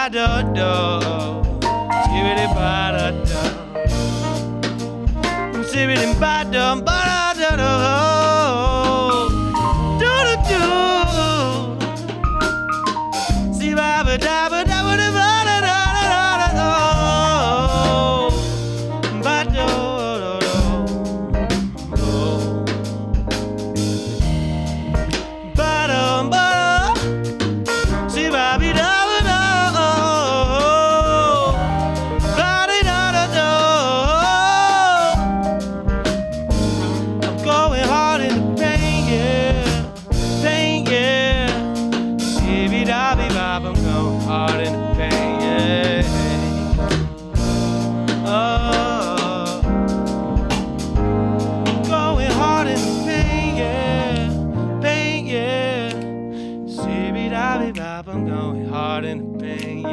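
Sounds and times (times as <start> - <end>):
drum kit beat: 0.0 - 54.4
jazz band playing: 0.0 - 58.3
bass guitar: 0.0 - 59.9
sliding wavering lead melody: 0.6 - 41.3.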